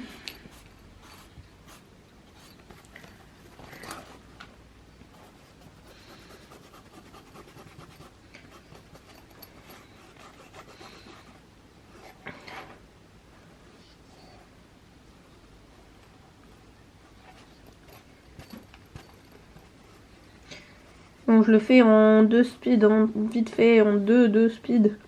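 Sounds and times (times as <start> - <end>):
felt-tip marker scratching: 0.5 - 3.6, 5.2 - 11.3.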